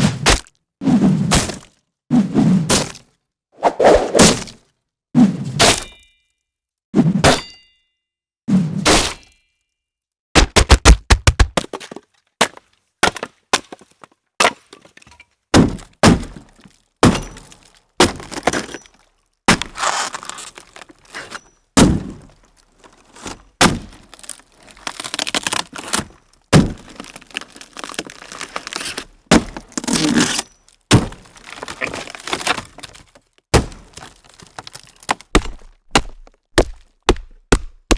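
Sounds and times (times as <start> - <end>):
axe chopping strikes: 0.1 - 0.5, 1.3 - 1.7, 2.7 - 3.0, 3.8 - 4.6, 5.6 - 6.1, 7.2 - 7.6, 8.8 - 9.4, 10.4 - 11.7, 15.6 - 18.8, 21.8 - 22.3, 23.2 - 27.2, 28.7 - 37.9
wood cracking and breaking: 10.6 - 37.9.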